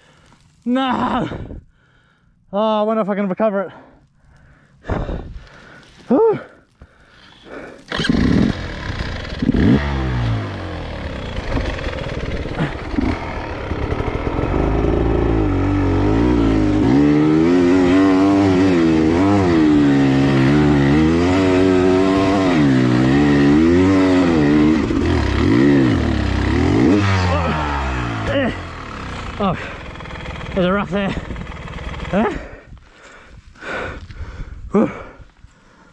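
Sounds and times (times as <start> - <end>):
dirt bike engine revving: 7.8 - 32.6.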